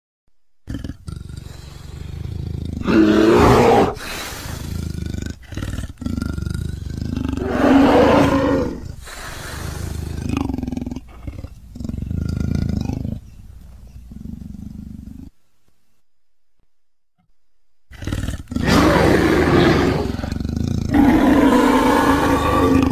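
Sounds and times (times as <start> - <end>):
creature roaring and growling: 2.8 - 4.0, 7.1 - 8.8, 18.0 - 22.9.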